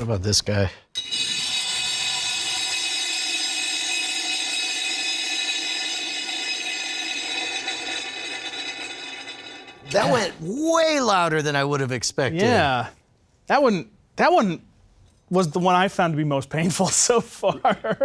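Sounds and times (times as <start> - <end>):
metal squealing against dry ice: 1.0 - 10.4.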